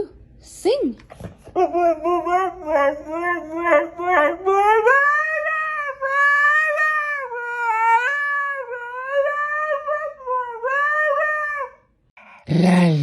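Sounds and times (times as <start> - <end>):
dog howling: 1.6 - 11.8.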